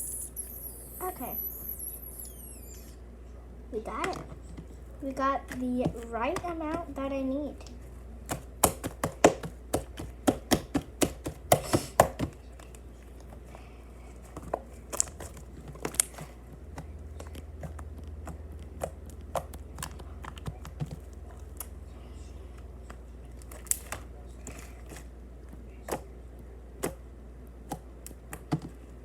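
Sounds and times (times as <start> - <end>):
slime squishing with clicks and pops: 23.4 - 24.0.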